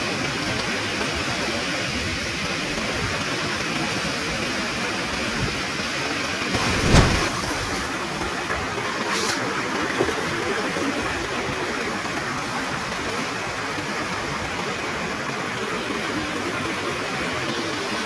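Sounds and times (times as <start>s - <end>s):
waterfall and river rushing: 6.5s - 8.3s.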